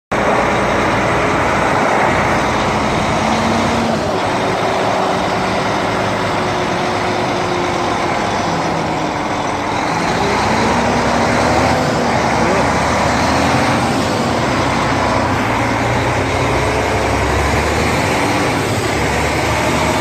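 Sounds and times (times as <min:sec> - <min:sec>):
diesel engine running: 0:00.1 - 0:20.0.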